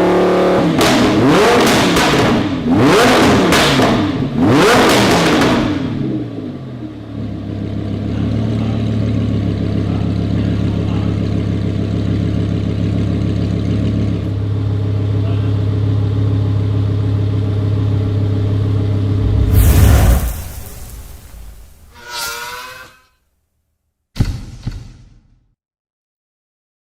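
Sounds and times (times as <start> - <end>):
sports car engine revving and idling: 0.0 - 19.1.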